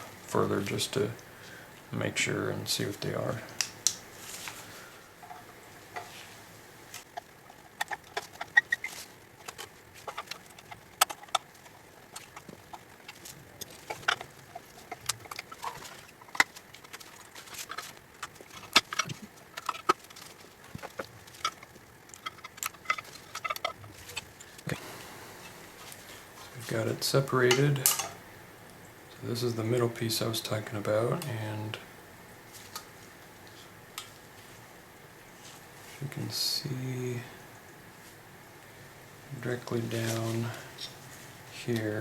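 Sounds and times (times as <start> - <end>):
hand tools clicking and scraping: 2.8 - 28.2.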